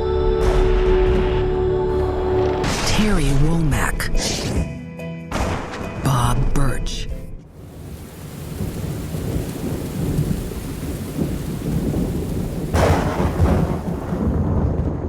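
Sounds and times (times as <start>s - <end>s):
rain falling: 7.4s - 14.6s
sharp thunderclap: 7.5s - 15.0s
thunder rumble: 7.5s - 15.0s.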